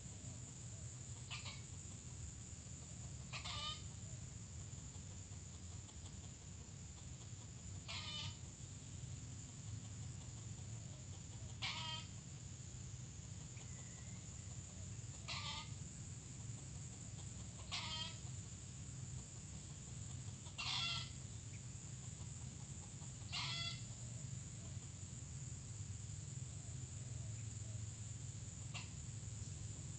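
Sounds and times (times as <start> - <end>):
steady low hum: 0.0 - 29.9
junglefowl calls: 1.1 - 1.8, 3.1 - 4.2, 4.9 - 8.7, 9.9 - 12.2, 13.5 - 15.8, 17.1 - 18.6, 19.5 - 21.4, 22.0 - 24.8, 28.6 - 29.1.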